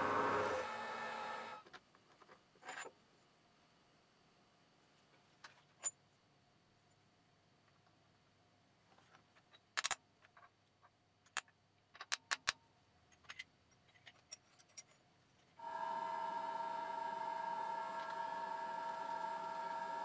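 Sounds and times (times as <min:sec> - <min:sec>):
workshop machine whining: 0:00.0 - 0:01.6, 0:15.6 - 0:20.0
metal parts clinking: 0:13.1 - 0:15.0.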